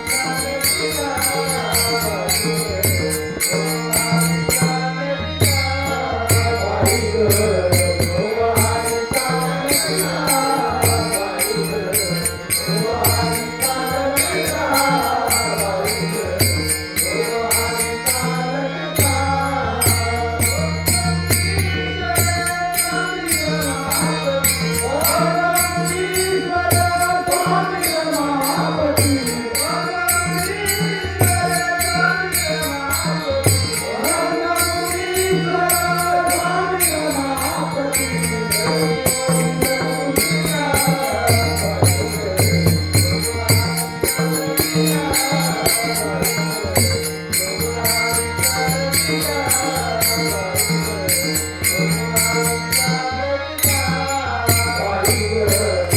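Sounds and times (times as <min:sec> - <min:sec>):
man singing devotional song: 0:00.0 - 0:55.9
small hand cymbals clashing: 0:19.9 - 0:55.9.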